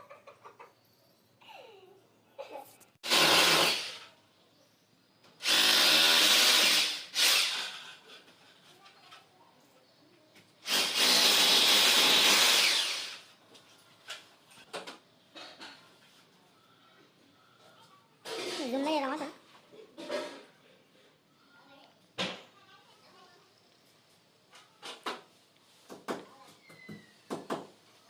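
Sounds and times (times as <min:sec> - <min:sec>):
electric drill running: 0:03.0 - 0:04.0, 0:05.4 - 0:08.0, 0:10.6 - 0:13.3.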